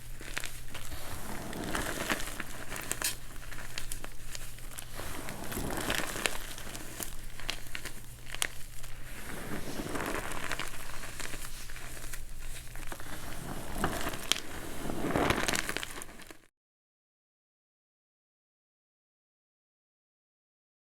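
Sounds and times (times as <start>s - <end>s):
chalk blocks crunching: 0.1s - 16.4s.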